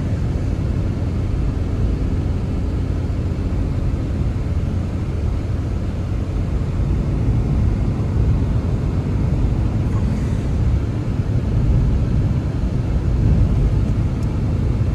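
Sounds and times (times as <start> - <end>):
low rumbling noise: 7.0 - 14.9.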